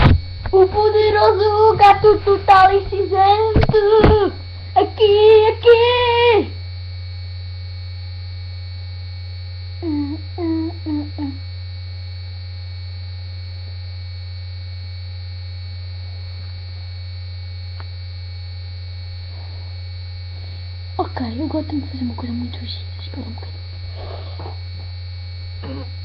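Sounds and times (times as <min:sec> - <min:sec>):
electrical mains hum: 0:00.0 - 0:26.0.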